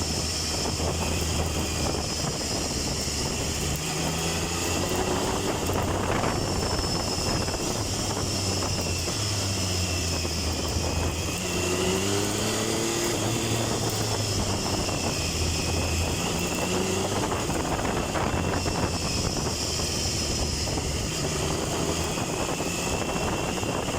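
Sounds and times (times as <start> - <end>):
motorcycle engine running: 0.0 - 23.9
wind noise: 0.0 - 23.9.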